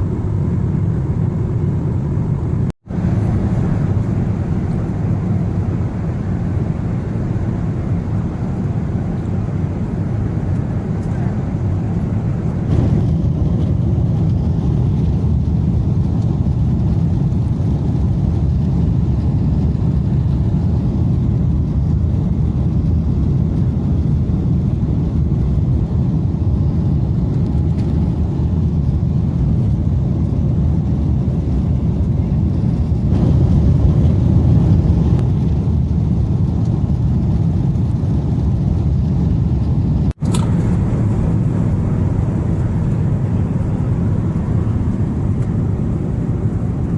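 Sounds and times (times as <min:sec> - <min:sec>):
airplane cabin engine rumble: 0:00.0 - 0:46.9
click: 0:40.2 - 0:41.2.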